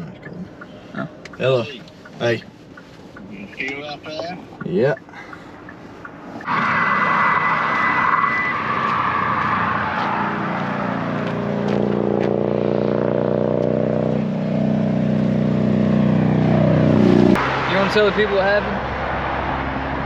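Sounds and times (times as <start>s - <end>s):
loud traffic rushing: 5.3s - 20.0s.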